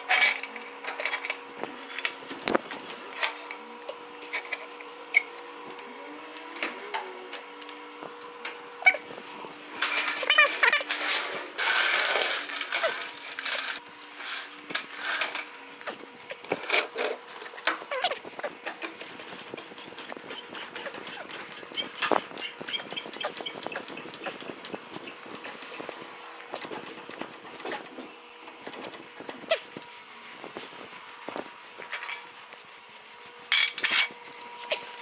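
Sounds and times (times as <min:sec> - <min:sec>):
metal clanks and scrapes: 0:09.7 - 0:15.6, 0:33.5 - 0:34.2
floor jack handle squeaking: 0:09.8 - 0:13.8, 0:17.7 - 0:26.2.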